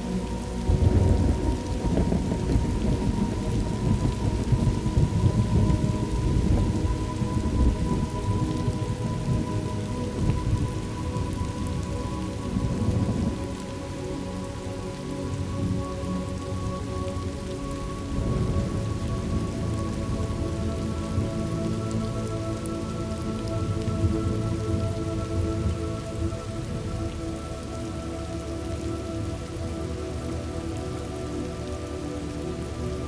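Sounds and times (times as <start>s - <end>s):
soft sustained tones: 0.0s - 33.0s
steady rain: 0.0s - 33.0s
distant thunder rumbling: 0.6s - 11.9s.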